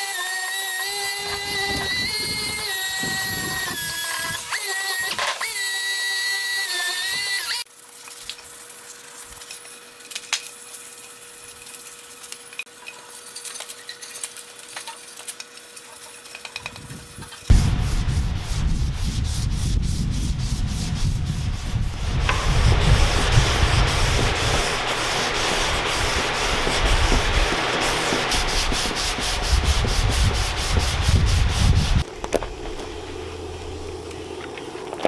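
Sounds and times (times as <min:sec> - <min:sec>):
sanding strokes: 0:00.0 - 0:07.6, 0:15.0 - 0:32.1
low steady hum: 0:17.5 - 0:35.0.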